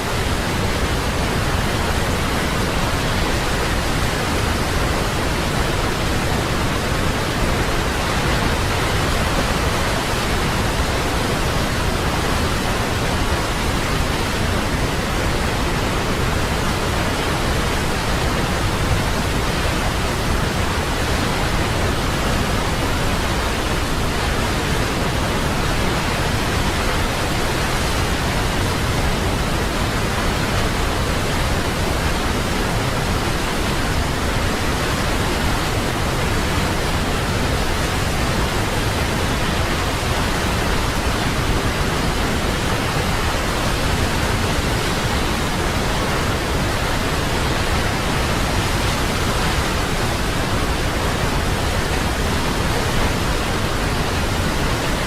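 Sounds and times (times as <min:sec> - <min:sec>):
waterfall rushing: 0:00.0 - 0:55.0.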